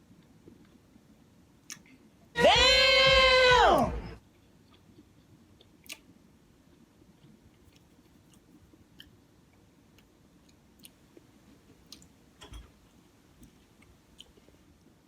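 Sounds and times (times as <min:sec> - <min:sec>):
person chewing: 0:01.6 - 0:02.1, 0:04.3 - 0:12.2, 0:12.9 - 0:14.7.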